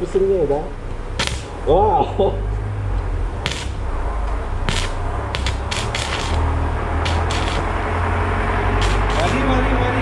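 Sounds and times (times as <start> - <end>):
welding arc crackling pops: 1.2 - 1.6, 3.4 - 3.9, 4.6 - 7.8, 8.8 - 9.5
low hum: 2.4 - 9.8.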